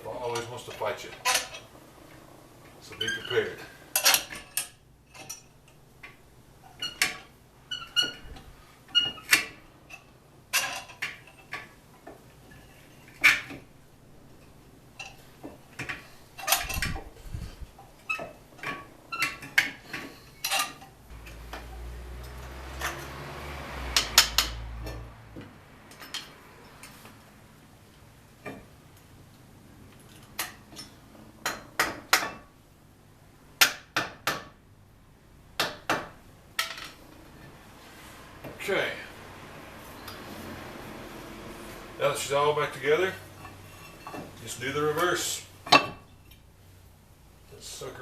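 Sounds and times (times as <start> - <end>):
metal tools clinking: 18.1 - 23.2.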